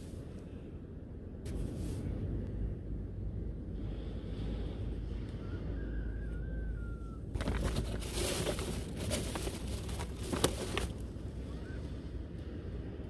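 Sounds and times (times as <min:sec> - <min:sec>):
long wavering whistled call: 0:05.4 - 0:07.2
rustling and clattering: 0:07.4 - 0:11.1.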